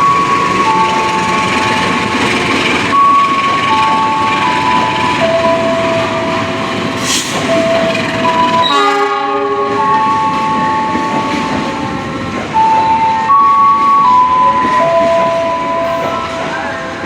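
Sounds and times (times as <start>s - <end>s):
train running: 0.0s - 17.0s
train horn blast: 8.6s - 9.9s.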